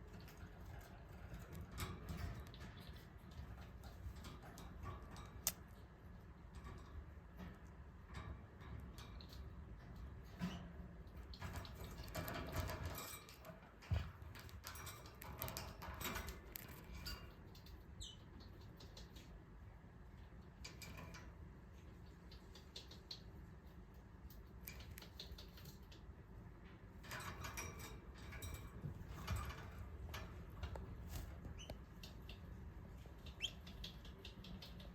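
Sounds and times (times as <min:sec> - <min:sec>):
budgerigar clicks and rustles: 0:00.0 - 0:19.6, 0:20.2 - 0:34.9
budgerigar chirp: 0:33.2 - 0:34.9.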